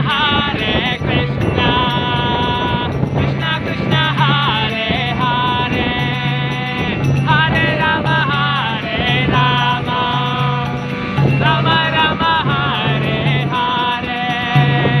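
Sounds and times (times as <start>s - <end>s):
small hand cymbals jingling: 0.0s - 15.0s
steady low beat: 0.0s - 15.0s
sustained instrument tones: 0.0s - 15.0s
voices chanting a melody: 0.0s - 15.0s.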